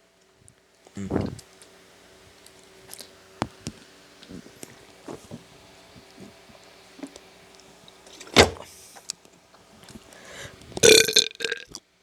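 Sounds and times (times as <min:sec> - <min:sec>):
person burping loudly: 0:01.0 - 0:01.4, 0:10.8 - 0:11.8.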